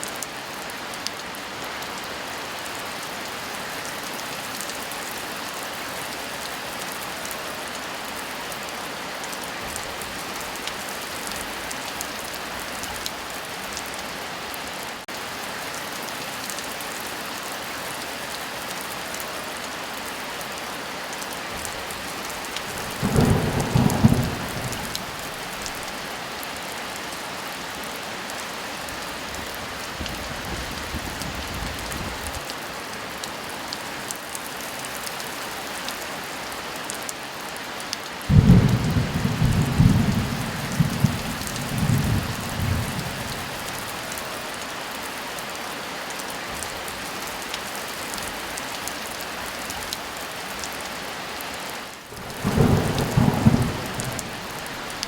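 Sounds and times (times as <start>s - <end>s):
heavy rain falling: 0.0s - 55.0s
thunder clap: 22.6s - 25.9s, 38.3s - 43.8s, 52.2s - 55.0s.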